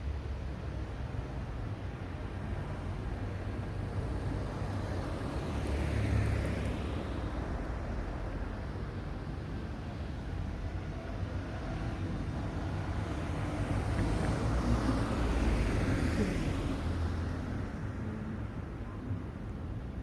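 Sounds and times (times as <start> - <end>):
road vehicle passing by: 11.7 - 18.3.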